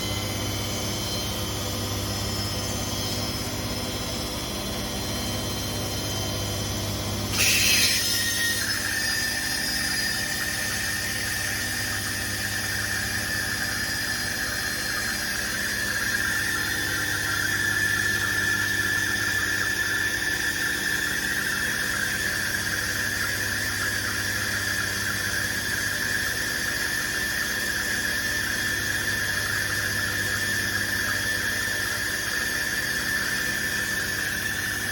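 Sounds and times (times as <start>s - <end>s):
high-pitched squeal: 7.3s - 12.7s.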